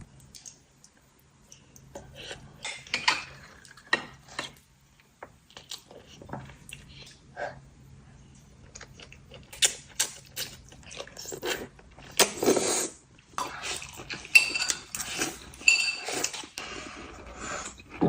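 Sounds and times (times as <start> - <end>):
dishes and cutlery clattering: 14.2 - 16.4.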